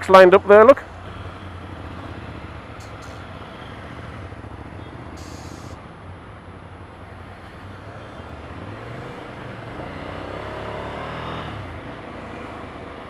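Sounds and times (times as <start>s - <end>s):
traffic engine hum: 0.0s - 13.0s
engine revving: 1.1s - 5.8s, 8.0s - 13.0s.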